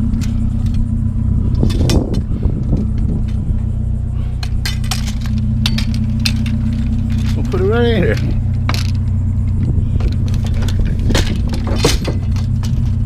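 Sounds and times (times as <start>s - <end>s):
scrap metal clanking: 0.0s - 13.0s
vehicle engine running: 0.0s - 13.0s.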